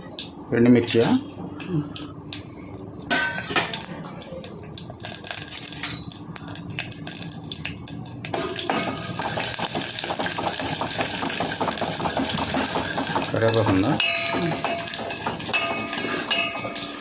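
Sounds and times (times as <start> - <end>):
spices crackling in hot oil: 2.0 - 17.0
oil sizzling: 2.2 - 17.0
spoon clinking on pan: 14.0 - 17.0.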